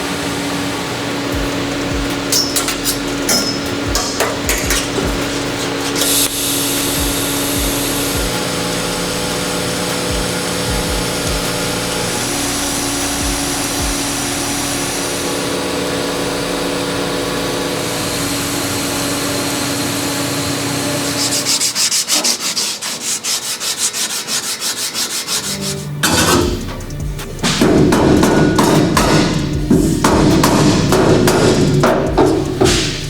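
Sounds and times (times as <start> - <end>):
power tool grinding metal: 0.0 - 33.0
rasping sanding strokes on metal: 0.9 - 15.4, 18.1 - 26.4.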